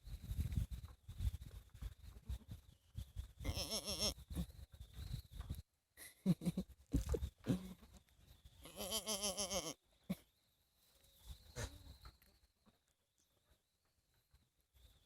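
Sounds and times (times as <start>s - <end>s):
animal bleating: 3.4s - 4.5s, 8.6s - 9.8s.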